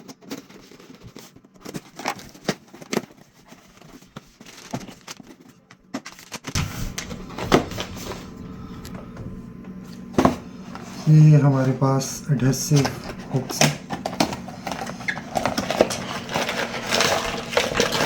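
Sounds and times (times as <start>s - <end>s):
packaging rustling and tearing: 0.0s - 9.1s, 9.8s - 18.0s
steady low hum: 6.5s - 18.0s.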